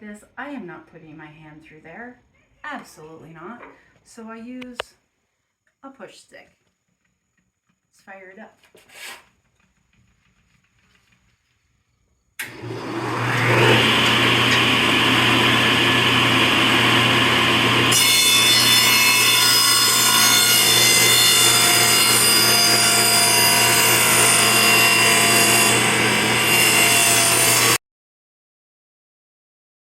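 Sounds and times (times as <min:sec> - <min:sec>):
saw blade cutting wood: 0:08.7 - 0:09.3, 0:12.4 - 0:27.8
table saw humming: 0:12.4 - 0:27.8.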